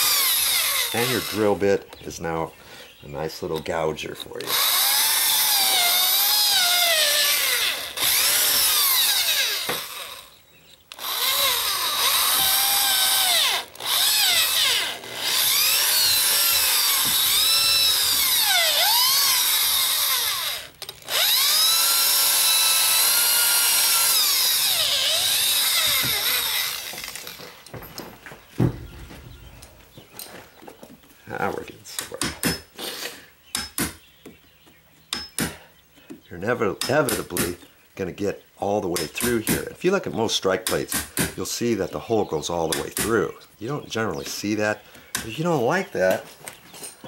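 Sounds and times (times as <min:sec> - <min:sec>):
power drill cutting wood: 0:00.0 - 0:01.8, 0:04.4 - 0:27.7.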